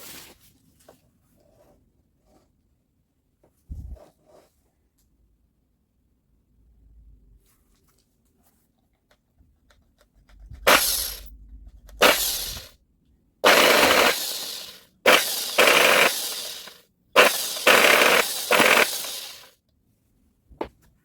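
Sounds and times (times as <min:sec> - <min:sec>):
reciprocating saw rattling: 0:10.5 - 0:12.8, 0:13.4 - 0:19.5.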